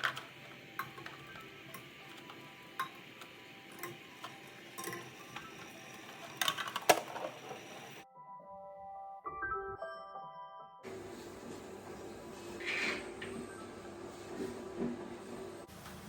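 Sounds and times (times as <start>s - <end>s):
objects clicking and knocking: 0.0s - 8.0s
objects rattling: 0.0s - 8.0s.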